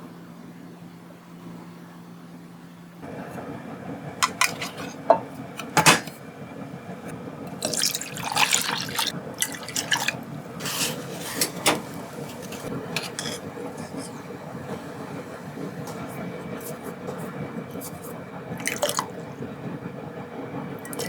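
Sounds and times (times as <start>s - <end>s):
dishes clinking: 4.2s - 6.2s, 7.6s - 14.8s
liquid splashing and pouring: 7.6s - 11.2s, 18.6s - 19.2s.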